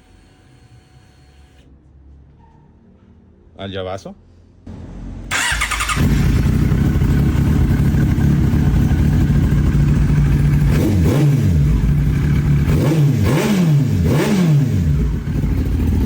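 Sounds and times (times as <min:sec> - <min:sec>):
motorcycle engine idling: 0:05.3 - 0:12.8, 0:14.8 - 0:16.0.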